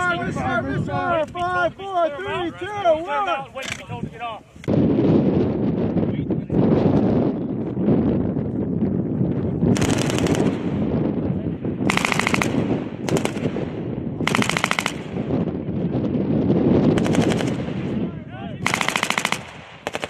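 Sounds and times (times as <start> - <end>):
machine gun bursts: 9.8 - 10.5, 11.9 - 12.5, 14.3 - 15.0, 18.6 - 20.0.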